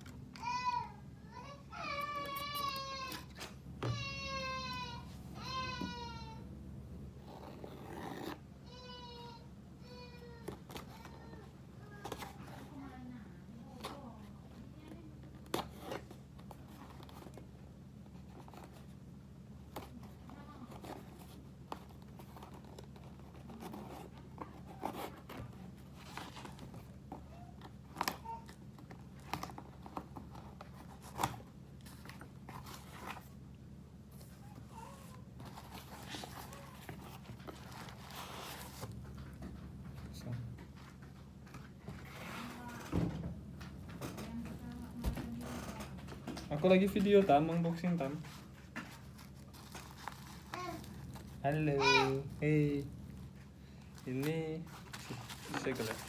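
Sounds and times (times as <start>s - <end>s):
low electrical hum: 0.0s - 56.0s
plastic wrapping crinkling and tearing: 46.6s - 56.0s.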